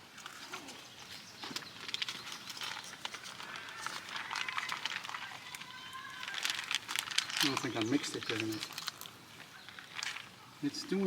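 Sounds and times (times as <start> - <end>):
plastic pouch crinkling: 1.6 - 10.4.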